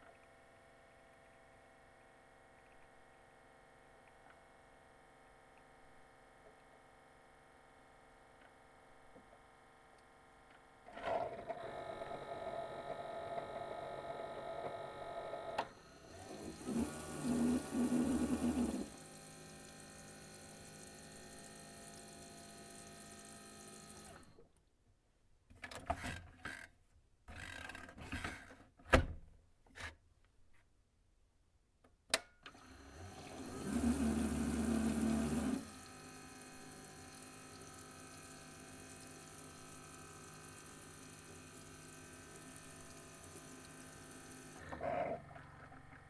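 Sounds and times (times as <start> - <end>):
coffee maker pump humming: 10.9 - 24.4, 32.6 - 46.0.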